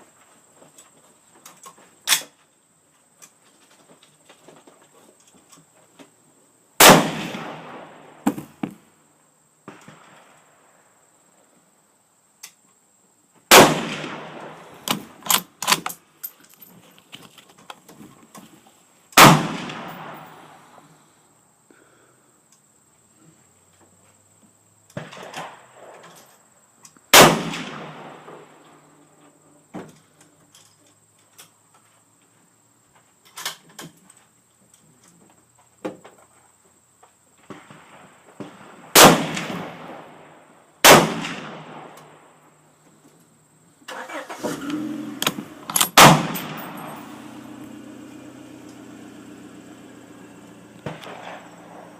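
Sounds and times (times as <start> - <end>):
gunshots echoing: 6.8 - 8.8, 13.5 - 15.2, 19.2 - 20.8, 27.2 - 28.6, 37.5 - 42.0, 45.2 - 47.2, 50.8 - 51.9.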